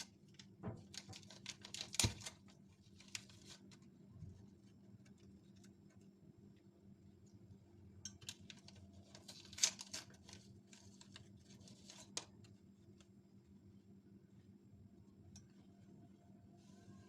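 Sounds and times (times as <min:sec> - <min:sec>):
clicks and rustling of food handling: 0:00.0 - 0:06.6, 0:08.0 - 0:13.2.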